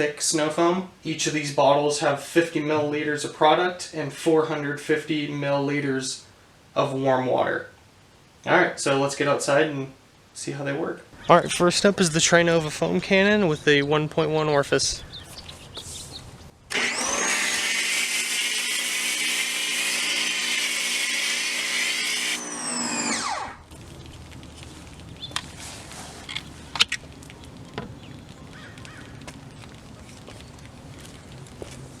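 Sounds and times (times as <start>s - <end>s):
pressure washer motor running: 16.7s - 23.8s
hissing water spray: 16.7s - 32.0s
faint ticks: 23.7s - 31.8s.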